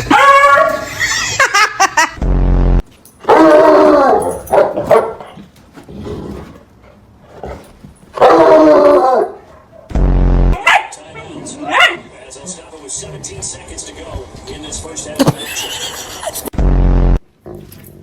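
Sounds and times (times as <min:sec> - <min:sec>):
dogs barking and whining: 0:00.0 - 0:01.4, 0:03.2 - 0:09.9, 0:10.6 - 0:12.1.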